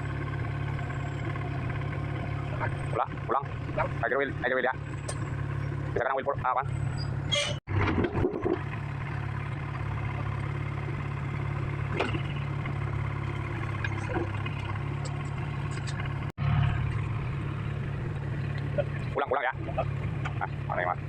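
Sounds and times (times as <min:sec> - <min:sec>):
excavator diesel engine idling: 0:00.0 - 0:07.3, 0:08.5 - 0:21.0.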